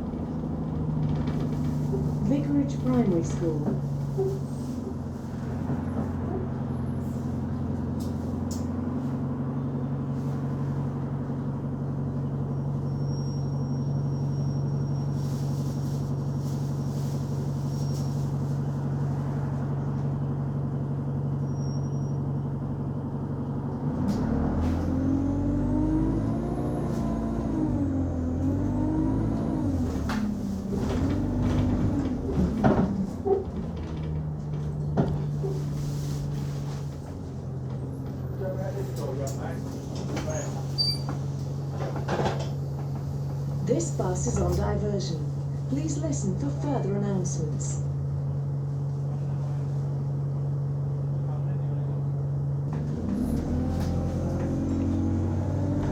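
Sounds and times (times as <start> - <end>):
bus diesel engine revving: 22.3 - 51.6, 52.2 - 55.9.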